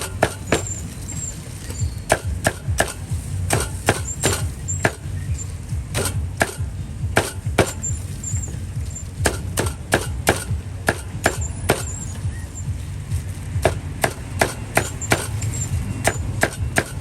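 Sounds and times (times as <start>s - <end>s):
cleaver chopping on wooden block: 2.1s - 5.1s, 5.9s - 7.9s, 9.2s - 12.0s, 13.6s - 15.4s, 16.0s - 17.0s.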